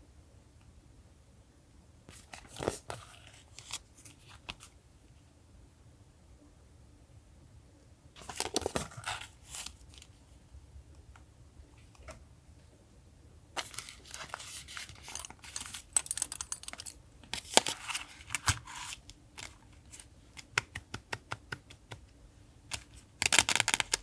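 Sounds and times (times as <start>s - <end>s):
paper rustling and crinkling: 2.1s - 4.7s, 8.2s - 10.2s, 13.6s - 20.1s.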